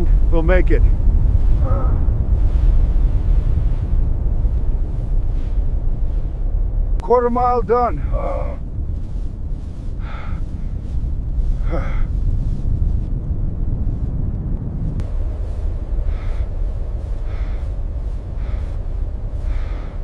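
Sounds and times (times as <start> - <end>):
blizzard wind rumbling: 0.0 - 20.0
man groaning: 8.0 - 8.6
man breathing heavily and gasping: 11.5 - 12.3, 16.0 - 20.0.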